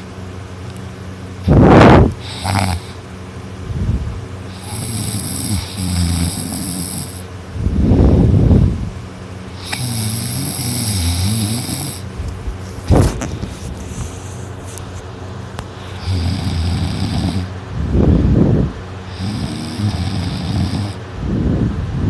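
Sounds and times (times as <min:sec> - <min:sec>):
person snoring loudly: 0:01.5 - 0:03.0, 0:04.5 - 0:07.3, 0:09.6 - 0:12.1, 0:15.8 - 0:17.5, 0:19.1 - 0:21.0.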